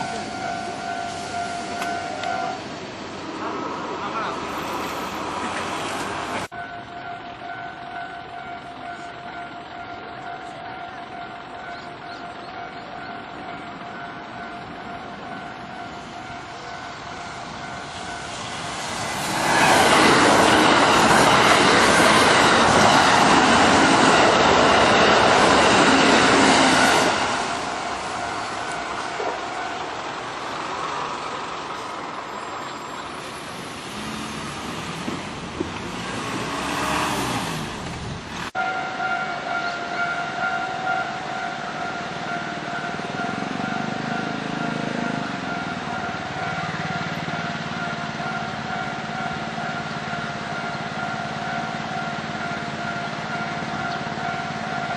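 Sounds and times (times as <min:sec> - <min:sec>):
level crossing warning bell: 0:00.0 - 0:02.7, 0:06.4 - 0:33.2, 0:38.6 - 0:54.9
electric train passing: 0:00.0 - 0:54.9.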